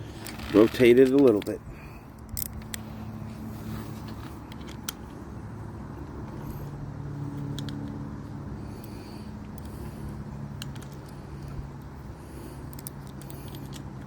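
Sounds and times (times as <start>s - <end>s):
low engine hum: 0.0s - 14.0s.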